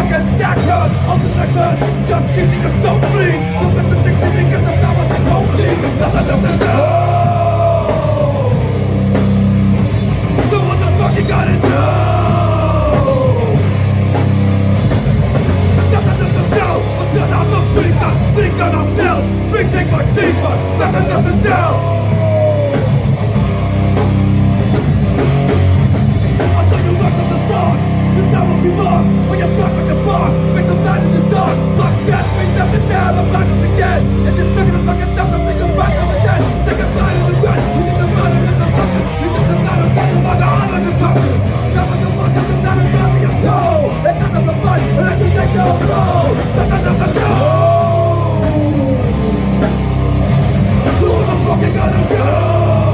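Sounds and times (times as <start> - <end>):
fast even beat: 0.0 - 52.9
rock band playing loudly: 0.0 - 52.9.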